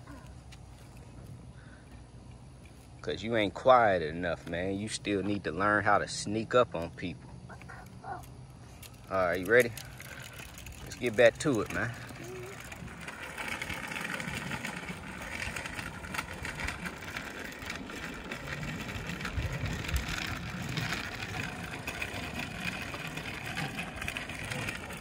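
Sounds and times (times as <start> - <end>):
bicycle riding rushing noise: 7.7 - 25.0
wind buffeting microphone: 11.7 - 22.6.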